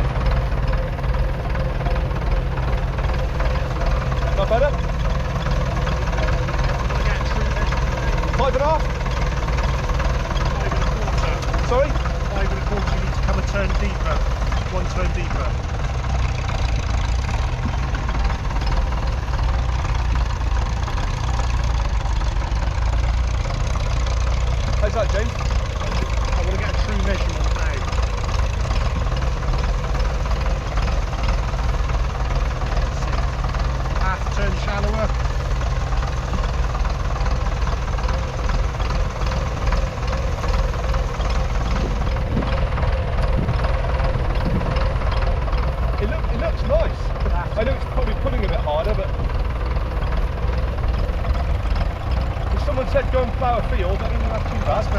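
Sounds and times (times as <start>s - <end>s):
diesel engine chugging: 0.0s - 54.9s.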